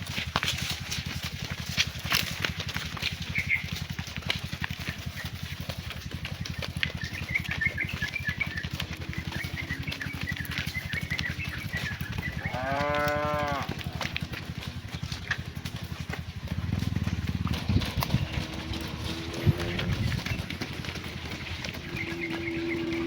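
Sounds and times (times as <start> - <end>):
cow mooing: 8.8 - 10.7, 12.4 - 14.6, 16.7 - 23.0
rapid low pulsing: 13.7 - 23.0.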